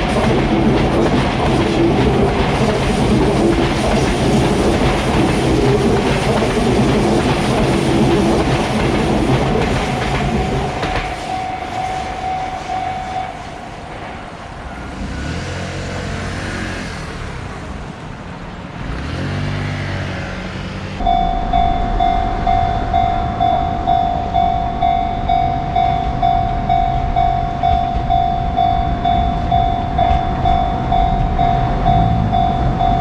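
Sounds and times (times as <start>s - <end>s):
electric train passing: 0.0s - 33.0s
steady tone: 21.0s - 33.0s
traction motor rising whine: 21.0s - 33.0s.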